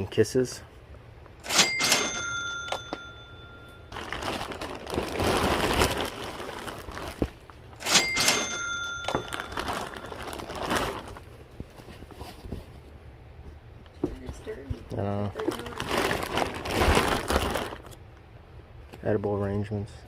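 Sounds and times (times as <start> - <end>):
sharp ringing clinks: 1.4 - 4.0, 7.8 - 10.4
plastic wrapping crinkling: 3.7 - 7.8, 9.0 - 12.4, 15.0 - 18.0.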